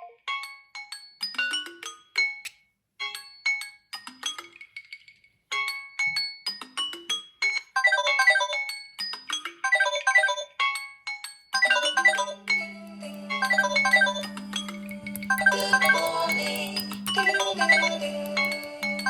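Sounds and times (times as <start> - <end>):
smartphone melodic alert tone: 11.6 - 19.0.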